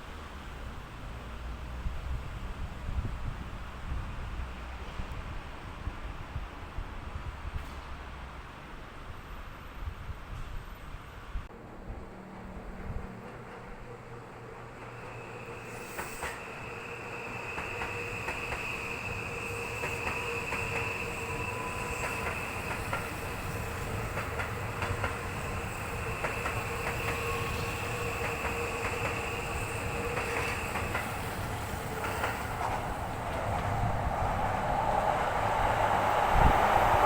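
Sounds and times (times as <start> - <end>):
electric train passing: 0.0 - 37.0
train wheels clicking over joints: 17.4 - 33.8.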